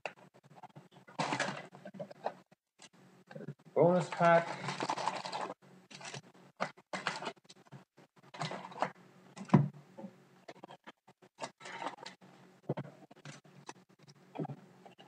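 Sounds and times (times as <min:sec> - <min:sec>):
wrappers crinkling and rustling: 0:03.9 - 0:07.4.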